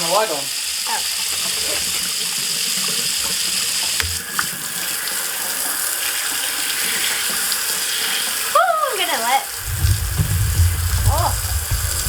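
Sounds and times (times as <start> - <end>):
tap water running into sink: 0.0 - 12.0
water splashing on work light: 2.9 - 8.4, 9.0 - 12.0.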